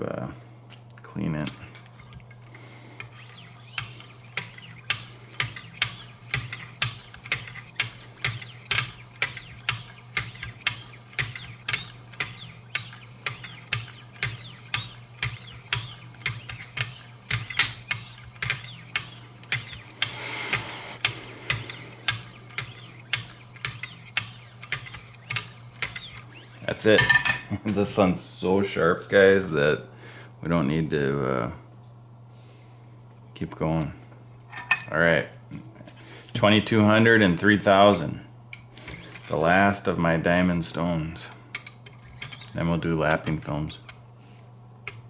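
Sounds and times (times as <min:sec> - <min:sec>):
sharpening stone scraping blade: 0:03.1 - 0:26.2.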